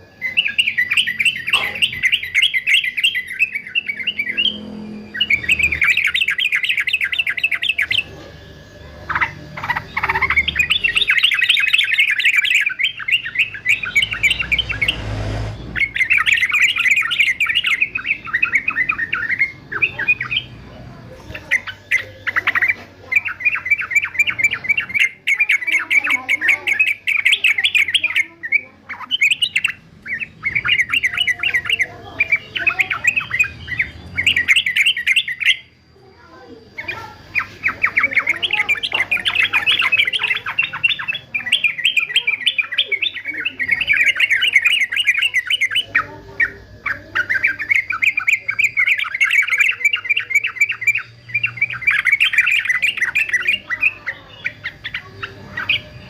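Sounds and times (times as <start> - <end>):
bird singing chattering notes: 0.0 - 56.0.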